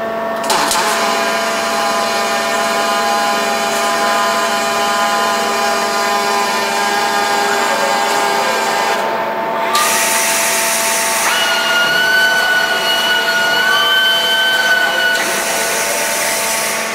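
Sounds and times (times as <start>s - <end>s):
machinery humming: 0.0s - 16.9s
welding arc hissing: 9.6s - 16.9s.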